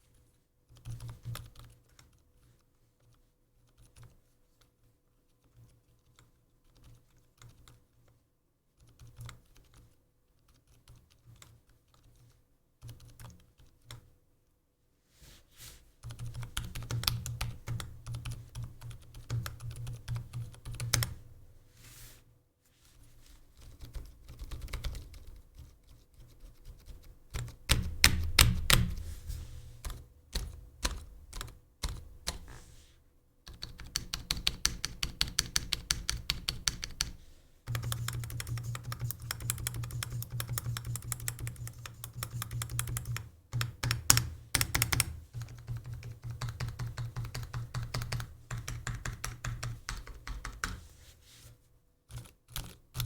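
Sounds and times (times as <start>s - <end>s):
muted mechanical keyboard typing: 0.7s - 2.1s, 8.8s - 9.9s, 12.8s - 14.0s, 16.0s - 21.2s, 23.6s - 29.0s, 29.8s - 32.5s, 33.5s - 50.8s, 52.1s - 53.0s.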